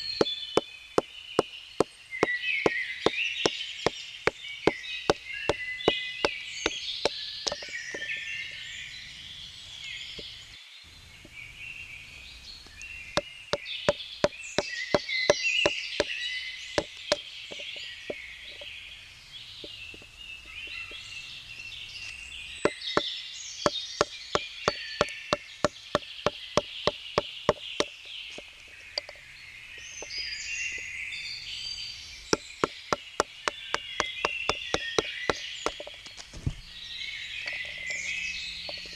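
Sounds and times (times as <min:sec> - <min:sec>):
birds singing: 0:00.0 - 0:38.9
wooden baton knocking on knife: 0:24.0 - 0:27.9.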